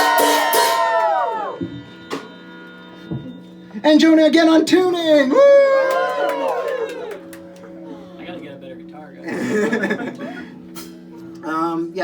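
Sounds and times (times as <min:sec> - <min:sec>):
audience whooping and cheering: 0:00.0 - 0:01.8, 0:05.3 - 0:07.8.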